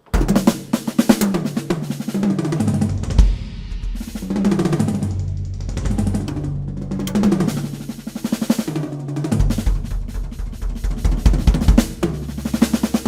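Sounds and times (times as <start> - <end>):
snare drum strikes: 0.0 - 13.0
tom drum rolls: 0.1 - 13.0
kick drum: 9.4 - 12.2.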